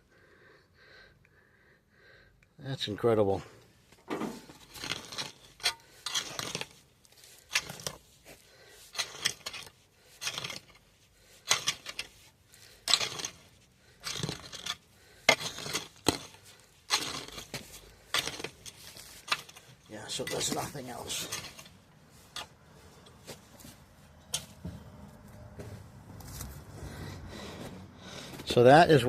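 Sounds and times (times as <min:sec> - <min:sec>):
digging soil scrapes: 0:04.2 - 0:24.6.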